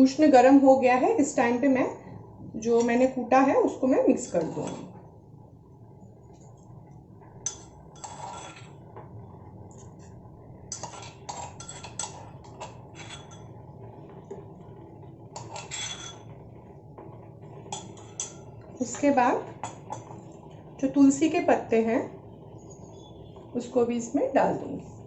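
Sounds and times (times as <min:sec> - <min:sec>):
metal kitchenware clinking: 0:07.4 - 0:08.8, 0:10.7 - 0:13.6, 0:15.4 - 0:16.3, 0:17.7 - 0:18.5.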